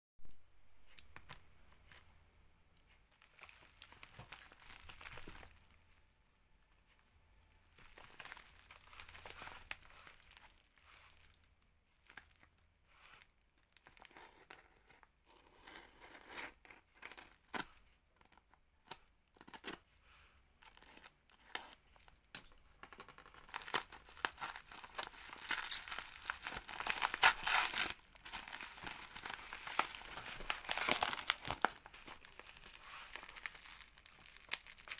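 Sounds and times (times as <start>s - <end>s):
packaging crinkling and tearing: 3.2s - 5.6s, 7.8s - 11.4s, 23.3s - 34.9s.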